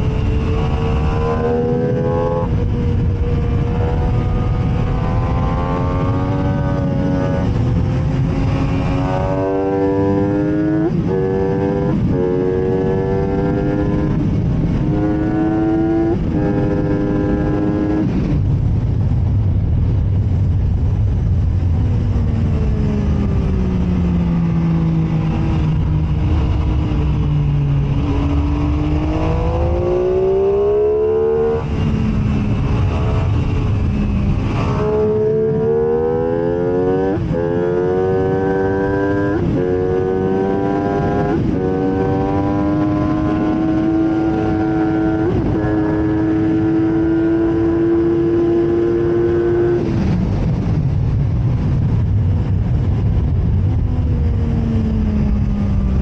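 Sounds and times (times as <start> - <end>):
motorcycle engine revving through gears: 0.0 - 18.6, 21.8 - 50.9
low rush of wind: 0.0 - 56.0.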